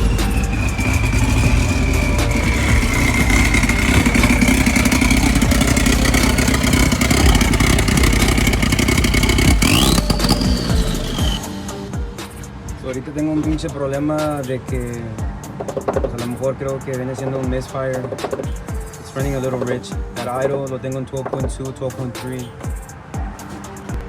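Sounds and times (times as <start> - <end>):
turbocharged car engine running: 0.0 - 11.9
high turbo whine: 0.0 - 13.3.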